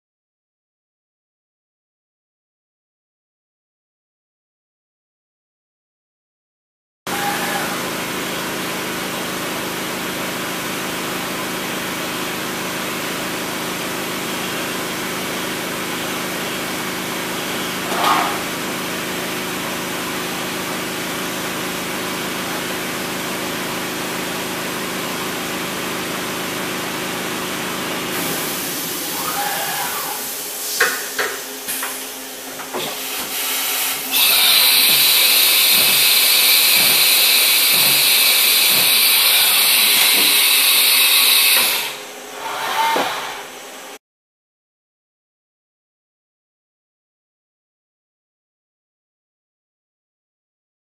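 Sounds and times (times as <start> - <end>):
machine mechanical hum: 7.1 - 44.0
machine whine: 27.7 - 30.6, 33.7 - 43.7
loud steady hiss: 33.4 - 42.0.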